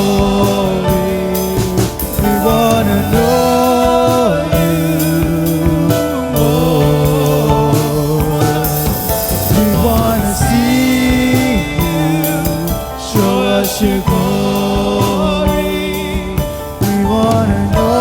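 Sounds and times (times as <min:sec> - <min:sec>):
cymbals: 0:00.0 - 0:18.0
praise band playing: 0:00.0 - 0:18.0
voices singing: 0:00.0 - 0:18.0.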